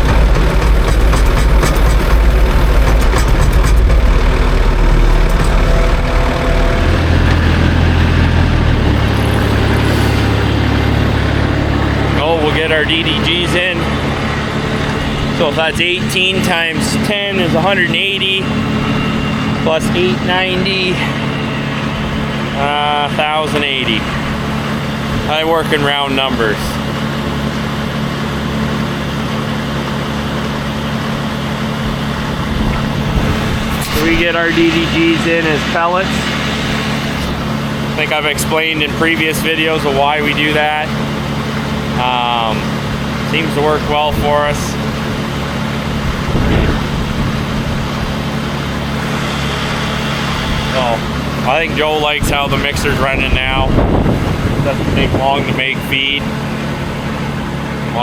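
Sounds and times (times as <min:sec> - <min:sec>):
tractor engine running: 0:00.0 - 0:58.0.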